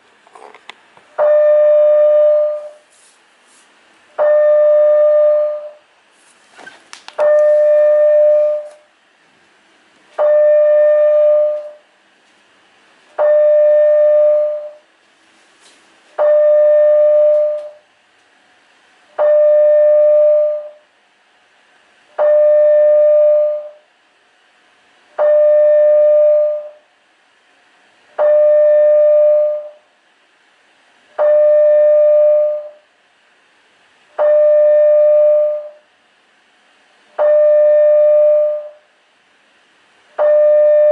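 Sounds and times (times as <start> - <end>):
fire alarm horn: 1.2 - 2.8, 4.2 - 5.8, 7.2 - 8.8, 10.2 - 11.8, 13.2 - 14.8, 16.2 - 17.8, 19.2 - 20.8, 22.2 - 23.8, 25.2 - 26.8, 28.2 - 29.8, 31.2 - 32.8, 34.2 - 35.8, 37.2 - 38.8, 40.2 - 40.9.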